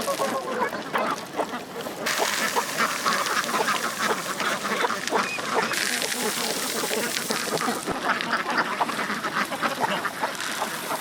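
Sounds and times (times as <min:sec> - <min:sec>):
ducks quacking: 0:00.0 - 0:11.0
steady hiss: 0:02.0 - 0:08.4.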